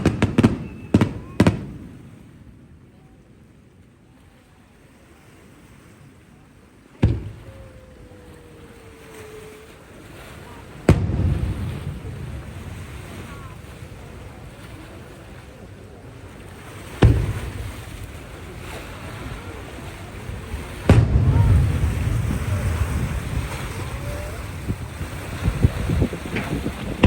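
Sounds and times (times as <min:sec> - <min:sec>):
firework booms: 0:00.0 - 0:02.2, 0:07.0 - 0:09.0, 0:10.6 - 0:14.5, 0:16.7 - 0:27.0
low rolling rumble: 0:06.6 - 0:27.0.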